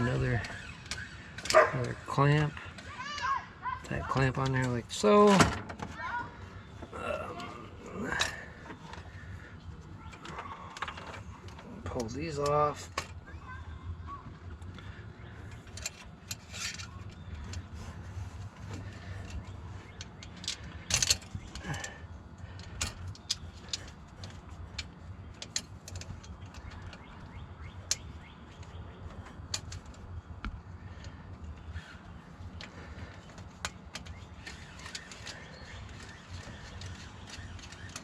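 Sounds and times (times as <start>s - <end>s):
steady low hum: 4.7s - 38.0s
metal tools and parts clinking: 15.3s - 30.0s.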